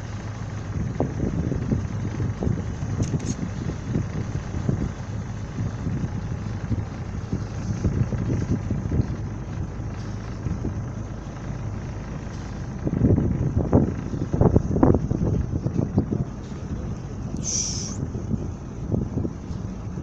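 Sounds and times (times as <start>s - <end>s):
boat engine running: 0.0s - 20.0s
wind buffeting microphone: 0.0s - 20.0s.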